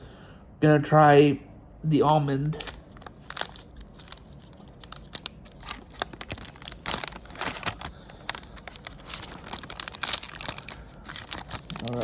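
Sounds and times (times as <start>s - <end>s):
wrapper crinkling and tearing: 2.6s - 12.0s.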